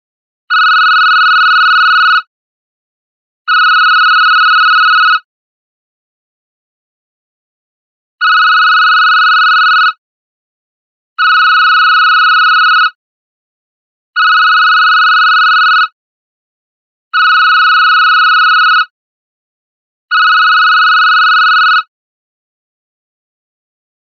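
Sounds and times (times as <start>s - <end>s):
electronic phone ringtone: 0.5s - 2.3s, 3.5s - 5.3s, 8.2s - 10.0s, 11.2s - 13.0s, 14.2s - 16.0s, 17.2s - 19.0s, 20.1s - 21.9s.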